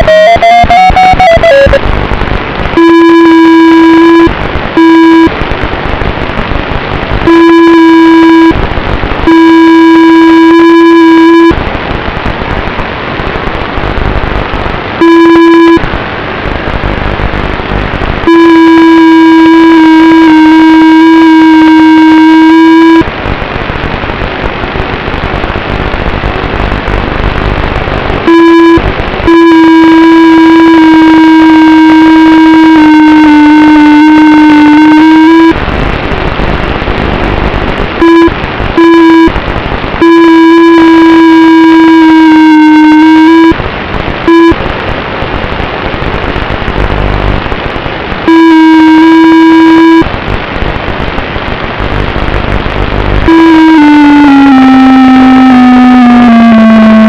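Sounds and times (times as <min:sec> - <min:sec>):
drone motors whining distorted: 0:00.0 - 0:01.9, 0:53.3 - 0:57.0.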